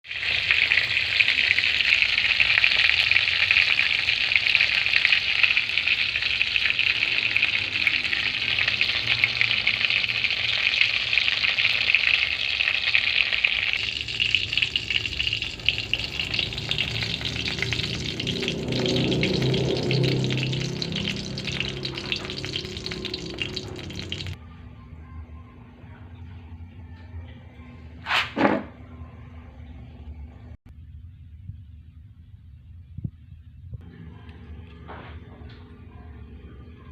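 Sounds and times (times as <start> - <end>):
meat sizzling in hot oil: 0.0 - 24.4.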